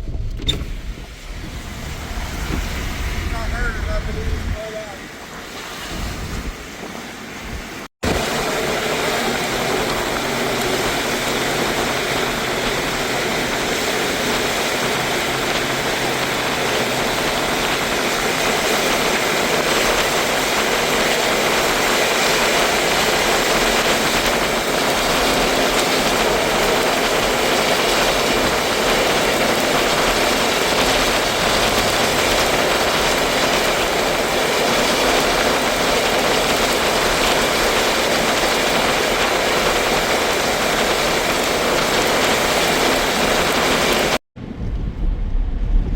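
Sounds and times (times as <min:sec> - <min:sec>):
high wind: 0:00.0 - 0:45.9
torrential rain: 0:00.7 - 0:45.9.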